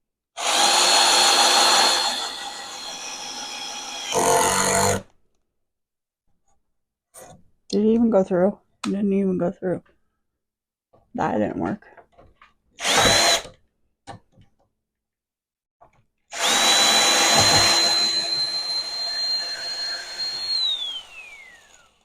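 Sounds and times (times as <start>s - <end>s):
power drill motor whine: 0.4s - 5.0s, 12.8s - 13.4s, 16.3s - 22.0s.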